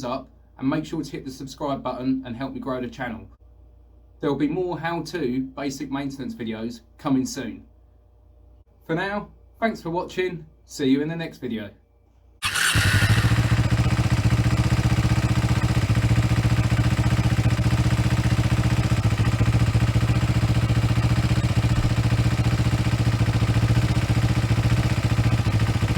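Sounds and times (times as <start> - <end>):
motorcycle engine idling: 12.4 - 25.9.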